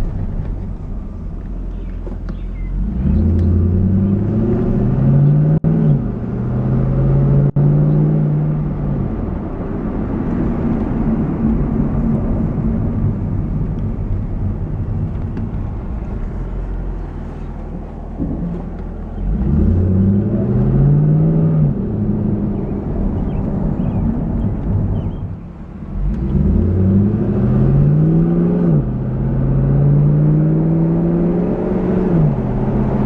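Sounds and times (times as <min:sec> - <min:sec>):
car engine running: 0:00.0 - 0:06.1, 0:08.4 - 0:27.8
road noise: 0:00.0 - 0:33.0.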